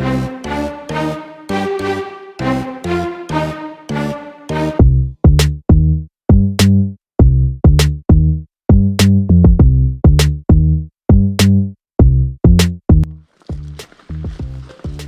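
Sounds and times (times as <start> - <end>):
drum machine beat: 4.5 - 13.0
deep bass line: 4.6 - 15.0.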